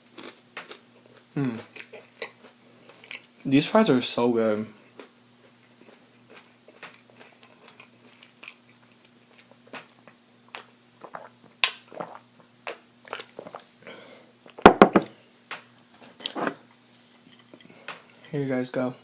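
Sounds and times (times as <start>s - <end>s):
person chewing fries: 0.0s - 3.4s, 4.8s - 14.6s
sharp knocks: 14.7s - 15.1s.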